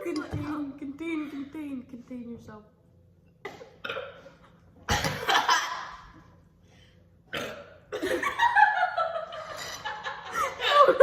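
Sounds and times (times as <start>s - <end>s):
person burping: 3.5s - 5.2s, 7.3s - 8.0s.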